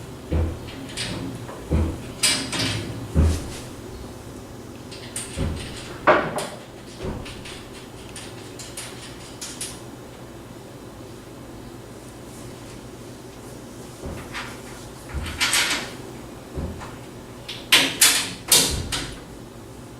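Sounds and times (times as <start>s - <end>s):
bolts clicking through holes: 0.0s - 9.8s, 14.0s - 19.3s
metal parts thumping and knocking: 0.0s - 9.8s, 14.0s - 19.3s.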